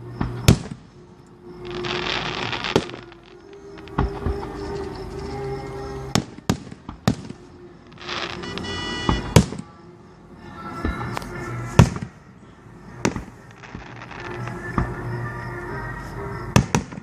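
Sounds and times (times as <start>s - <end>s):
fireworks bangs: 0.2s - 0.9s, 1.6s - 5.0s, 6.1s - 9.7s, 11.8s - 12.2s, 13.0s - 15.0s, 16.5s - 17.0s
fireworks crackling: 0.3s - 0.9s, 1.5s - 5.3s, 6.1s - 9.7s, 13.0s - 17.0s.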